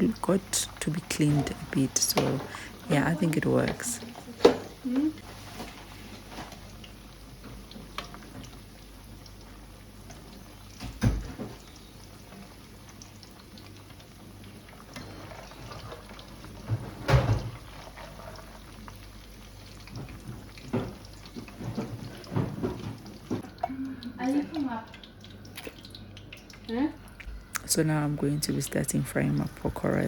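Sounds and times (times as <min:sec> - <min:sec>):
kitchen knocks and clatter: 0:00.9 - 0:04.8, 0:10.8 - 0:11.6, 0:15.0 - 0:18.4, 0:19.8 - 0:23.5.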